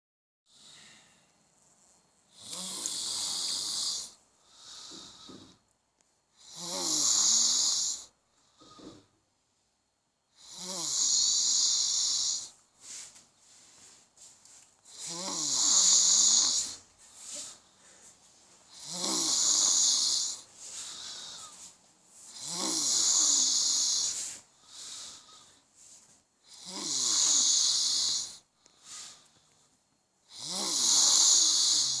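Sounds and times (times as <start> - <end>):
soft breaths: 0.5 - 5.6, 6.9 - 9.8, 11.3 - 30.0
heavy snoring: 2.3 - 5.6, 6.4 - 9.1, 10.4 - 12.6, 14.9 - 16.9, 18.7 - 21.6, 22.3 - 25.6, 26.4 - 29.1, 30.3 - 32.0.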